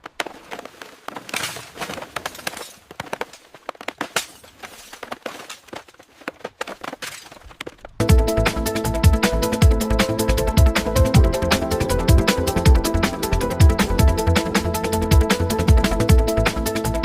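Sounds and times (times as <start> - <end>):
drum and bass music: 8.0 - 17.0.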